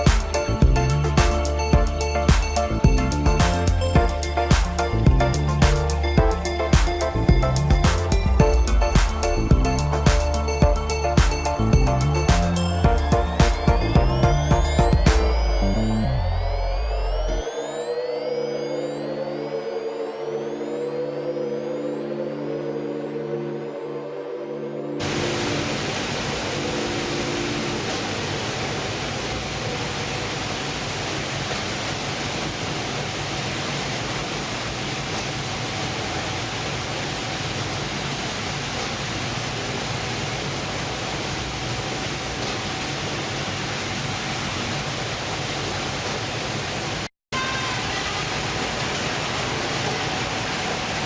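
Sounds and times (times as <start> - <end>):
short bit of music: 0.0 - 21.2
wind and water rushing: 25.0 - 47.1, 48.2 - 51.0.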